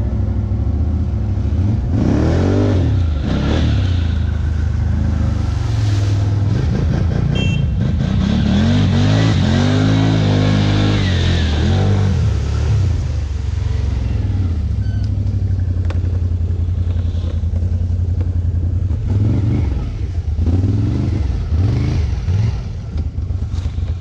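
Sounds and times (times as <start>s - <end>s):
engine running and revving: 0.0s - 24.0s.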